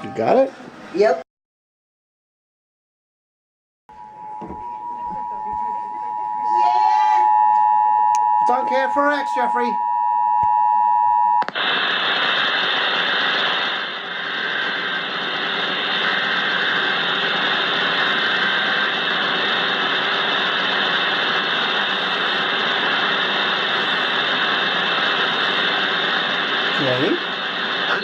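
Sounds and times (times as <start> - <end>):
two-tone attention signal: 3.9 - 6.6
radio static hiss: 11.4 - 28.0.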